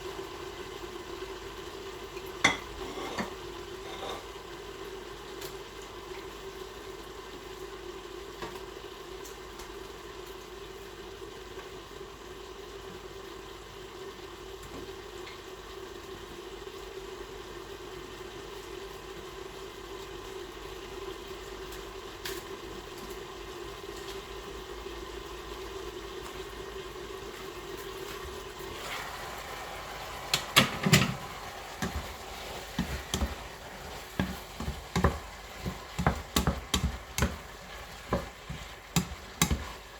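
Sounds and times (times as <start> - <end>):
food sizzling in a pan: 0.0 - 39.9
spatula clattering against pan: 30.3 - 39.8.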